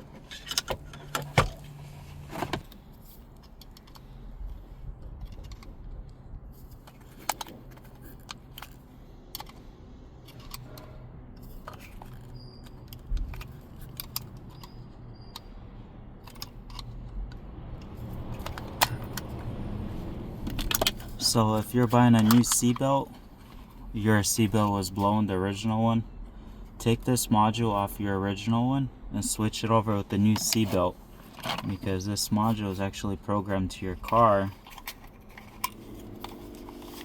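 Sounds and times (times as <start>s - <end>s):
clicks and clinks of small parts: 3.1s - 15.5s, 16.2s - 17.4s.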